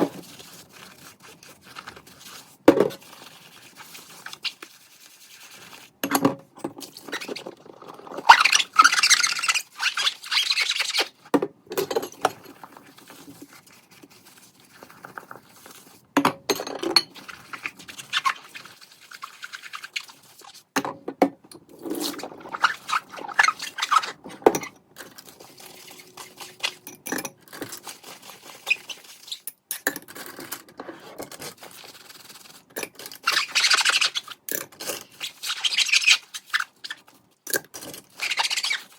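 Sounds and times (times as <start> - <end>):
rubbing or scrubbing: 0.0 - 6.0, 6.9 - 11.3, 12.5 - 16.1, 17.1 - 20.7, 21.8 - 29.4, 31.0 - 37.3, 37.9 - 38.9
kitchen items knocking and clicking: 6.0 - 6.9, 11.3 - 12.8, 16.2 - 17.2, 20.8 - 21.8.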